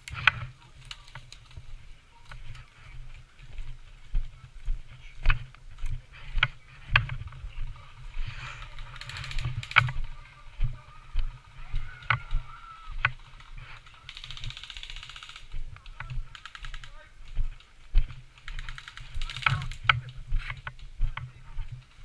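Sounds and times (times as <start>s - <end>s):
airsoft guns firing bursts: 8.5s - 10.2s, 13.1s - 17.0s, 18.5s - 19.9s.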